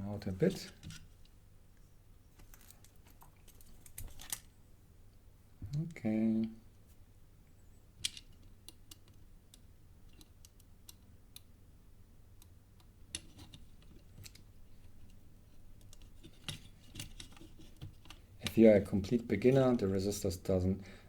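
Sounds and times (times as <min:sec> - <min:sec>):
small clicks of resistors: 0:08.0 - 0:11.5.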